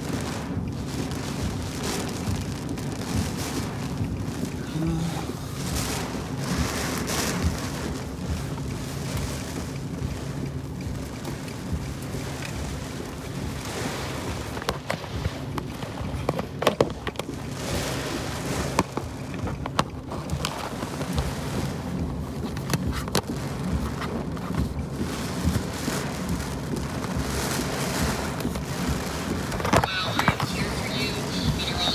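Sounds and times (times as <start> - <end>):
storm wind: 0.0 - 10.4
rain: 0.0 - 31.9
vehicle humming: 29.8 - 31.9.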